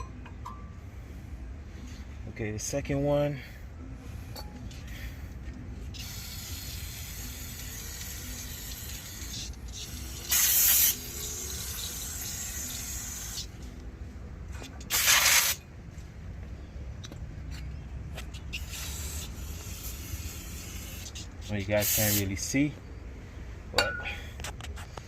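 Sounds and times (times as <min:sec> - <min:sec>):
aerosol spray can hissing: 0:05.9 - 0:13.5, 0:14.9 - 0:15.6, 0:18.5 - 0:22.3.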